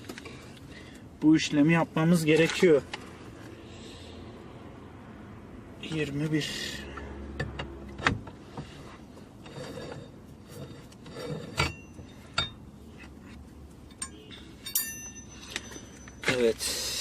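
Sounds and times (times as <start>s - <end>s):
tools scraping on metal: 8.6s - 16.8s
metallic clinks of wrench: 13.9s - 16.7s.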